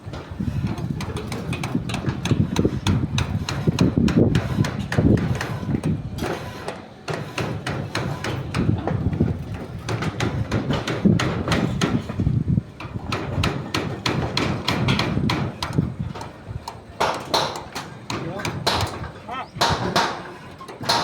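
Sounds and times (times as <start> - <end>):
hammer strikes: 7.1 - 12.1, 17.0 - 21.0.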